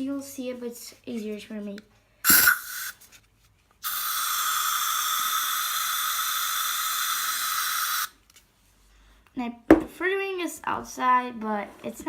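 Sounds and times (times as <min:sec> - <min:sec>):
aerosol can spraying hiss: 0:02.2 - 0:03.0, 0:03.8 - 0:08.1.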